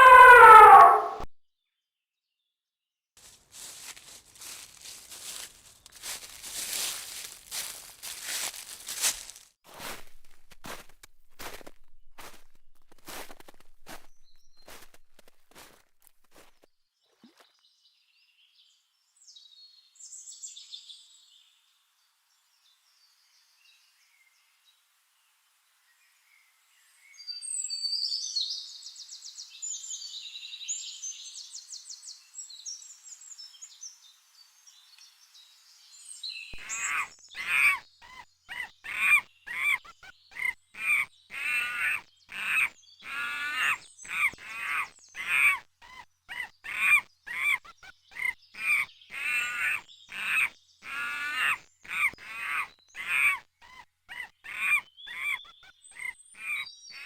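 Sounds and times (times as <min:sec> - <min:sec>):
birds chirping and twittering: 0:00.0 - 0:01.2, 0:13.1 - 0:15.7, 0:34.8 - 0:57.0
monkeys calling: 0:00.0 - 0:01.2, 0:36.6 - 0:57.0.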